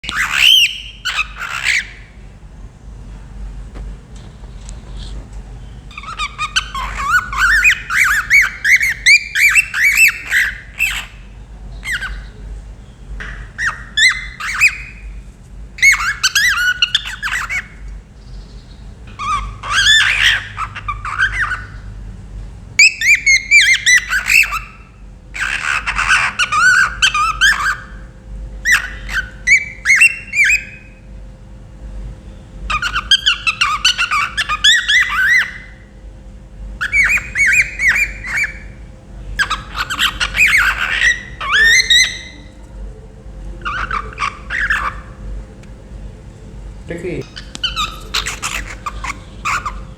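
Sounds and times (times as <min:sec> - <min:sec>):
cockatiel chirping and whistling: 0:00.0 - 0:02.0, 0:05.9 - 0:11.2, 0:13.2 - 0:15.0, 0:15.8 - 0:17.8, 0:19.1 - 0:21.8, 0:22.8 - 0:28.0, 0:28.7 - 0:30.9, 0:32.7 - 0:35.8, 0:36.8 - 0:38.8, 0:39.4 - 0:42.5, 0:43.6 - 0:45.2, 0:47.2 - 0:49.9.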